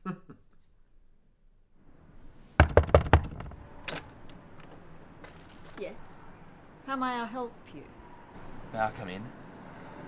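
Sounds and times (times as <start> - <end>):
knocking on wooden door: 2.6 - 3.6.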